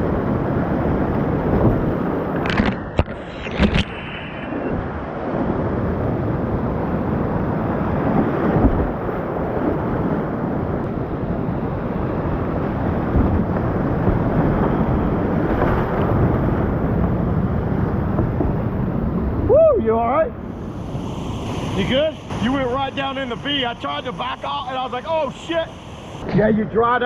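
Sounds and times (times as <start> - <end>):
whitewater rushing: 20.3 - 26.4.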